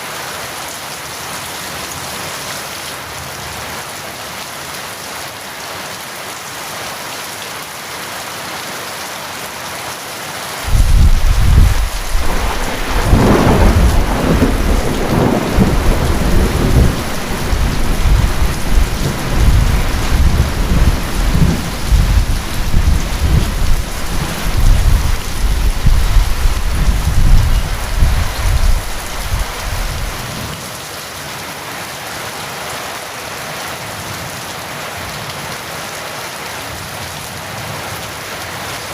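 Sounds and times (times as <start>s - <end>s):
steady rain: 0.0s - 38.9s
thunder rumbling: 10.7s - 30.4s.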